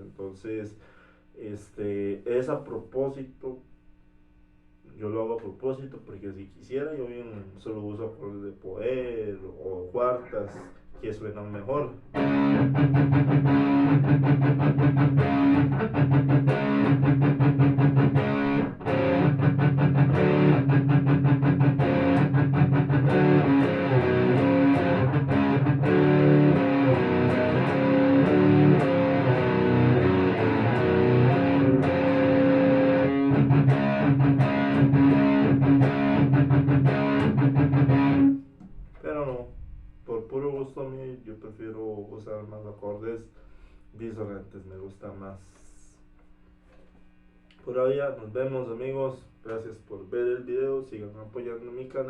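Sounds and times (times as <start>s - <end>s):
distorted electric guitar riff: 12.1s - 38.5s.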